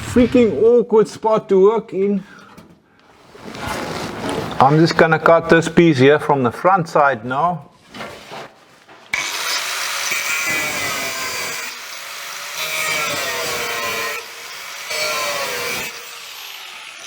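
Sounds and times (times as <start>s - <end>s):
power tool grinding through steel: 9.2s - 17.0s.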